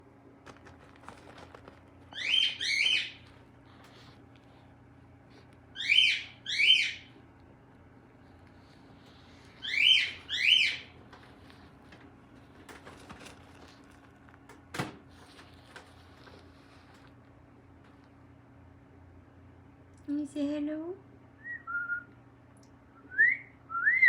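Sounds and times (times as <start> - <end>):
cockatiel whistled chirps: 2.2 - 3.2, 5.8 - 7.1, 9.6 - 10.9, 21.4 - 22.1, 23.0 - 24.0.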